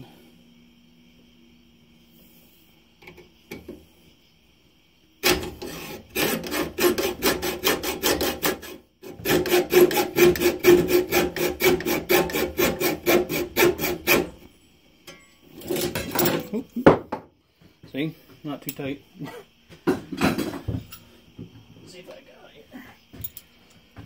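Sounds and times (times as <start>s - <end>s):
hacksaw sawing metal: 5.2s - 14.4s.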